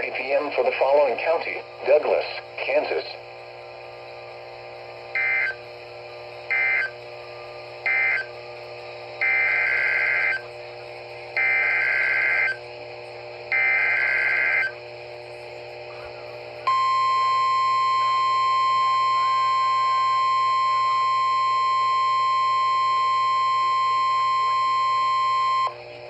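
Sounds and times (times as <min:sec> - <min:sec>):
steady warning alarm tone: 0:03.6 - 0:25.8.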